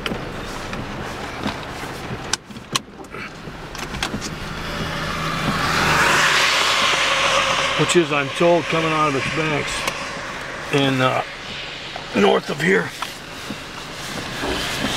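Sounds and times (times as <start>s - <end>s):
low steady rumble: 0.0s - 14.9s
tyres hissing on wet road: 4.3s - 14.9s.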